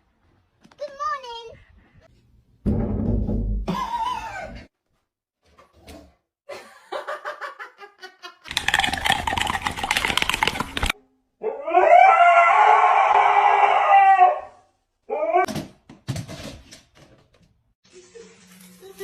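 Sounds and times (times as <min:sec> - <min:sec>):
rapid rattling clatter: 0:08.5 - 0:11.0
dog howling: 0:11.4 - 0:15.5.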